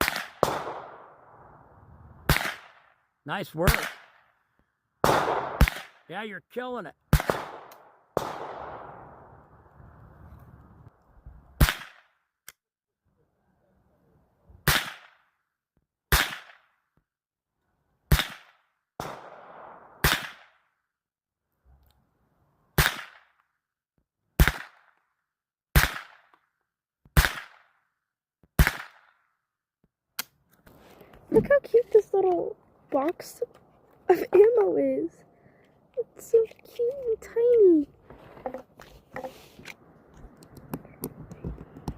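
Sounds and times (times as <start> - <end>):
rifle shots: 0.0 - 1.2, 2.3 - 2.9, 3.6 - 4.2, 5.0 - 6.0, 7.1 - 9.2, 18.1 - 20.6, 24.4 - 24.8, 25.8 - 26.3, 27.2 - 27.6, 28.6 - 29.1.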